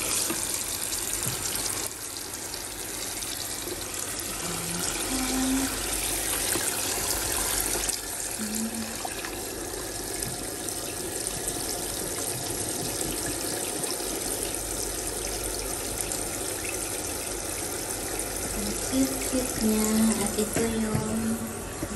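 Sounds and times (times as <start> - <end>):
water running into tub: 0.0 - 21.9.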